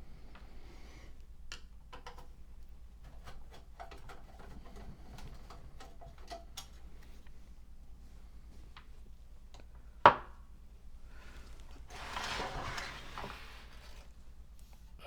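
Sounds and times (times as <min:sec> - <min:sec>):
small parts clicking and tapping: 0:01.5 - 0:03.2.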